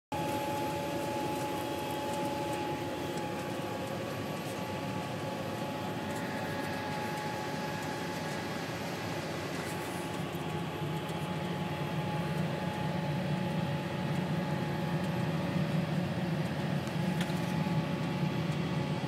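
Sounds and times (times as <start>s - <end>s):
steady whine: 0.1s - 19.0s
tractor diesel engine drone: 0.1s - 19.0s.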